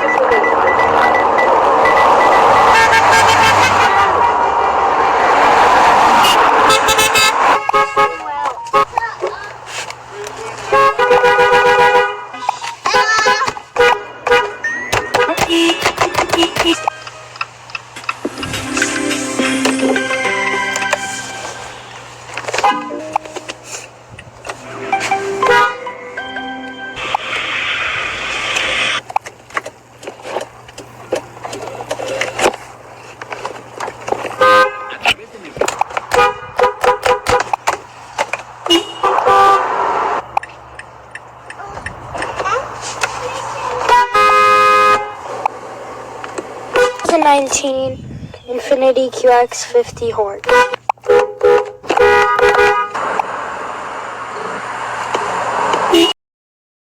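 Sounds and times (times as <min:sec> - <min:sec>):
car horn beep: 0:00.0 - 0:04.2, 0:06.2 - 0:09.1, 0:10.7 - 0:17.4, 0:22.6 - 0:23.4, 0:24.6 - 0:27.1, 0:34.4 - 0:35.0, 0:36.1 - 0:37.6, 0:38.7 - 0:39.7, 0:43.8 - 0:45.2, 0:46.7 - 0:47.4, 0:50.4 - 0:53.0, 0:55.9 - 0:56.2.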